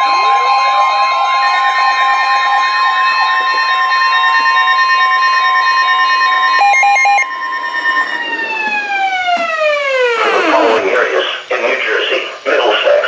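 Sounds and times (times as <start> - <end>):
steady alarm tones: 2.2 - 11.5
tone sliding downward in pitch: 6.6 - 11.0.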